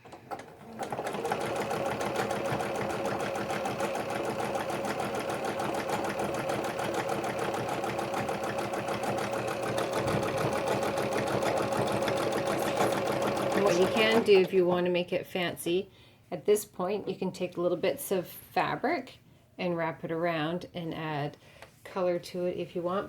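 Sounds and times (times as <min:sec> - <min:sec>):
sewing machine running: 0:00.0 - 0:14.5.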